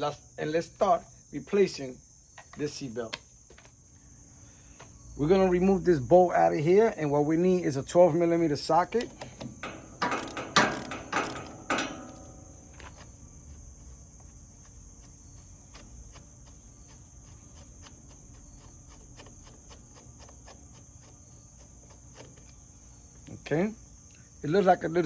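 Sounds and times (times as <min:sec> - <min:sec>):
high insect chirr: 0:00.0 - 0:25.0
metal clanks: 0:08.9 - 0:13.0
ratchet wrench clicks: 0:09.6 - 0:12.4.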